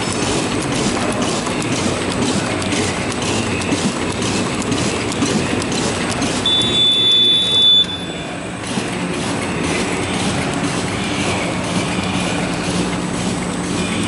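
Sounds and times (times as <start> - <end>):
machine clattering and clicking: 0.0 - 14.0
high steady beep: 6.4 - 8.2.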